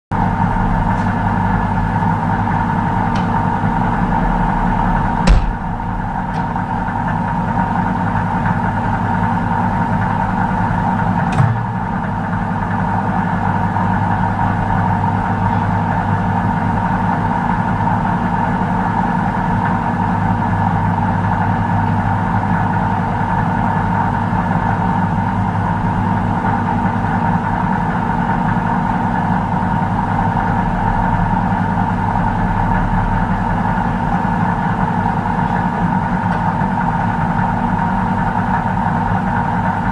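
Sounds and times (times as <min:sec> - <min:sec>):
microwave oven humming: 0:00.1 - 0:39.9
sharp click: 0:05.3 - 0:06.6.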